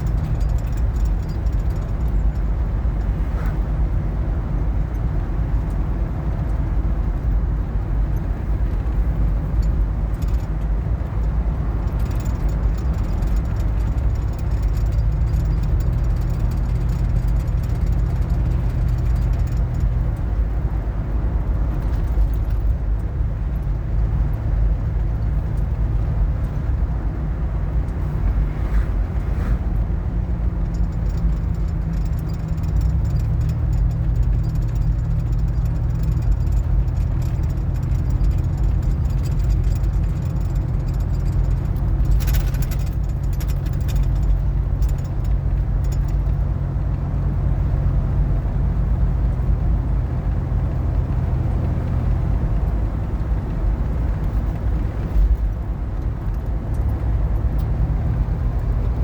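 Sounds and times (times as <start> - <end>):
car engine and road noise: 0.0 - 59.0
brief rattles: 30.6 - 46.4.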